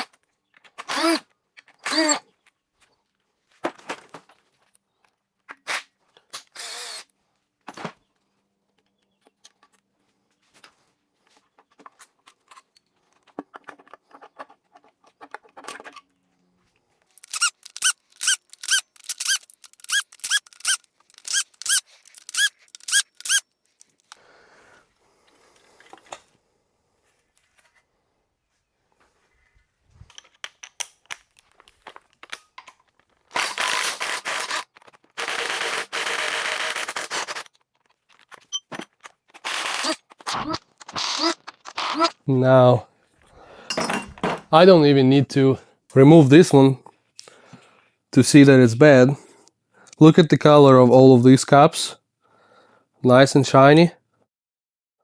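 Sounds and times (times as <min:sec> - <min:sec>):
squeaky fastener strokes: 0:00.8 - 0:01.2, 0:01.8 - 0:02.2, 0:17.2 - 0:24.2, 0:33.3 - 0:42.2
metal tool clinks and clanks: 0:17.2 - 0:24.2, 0:43.7 - 0:44.5.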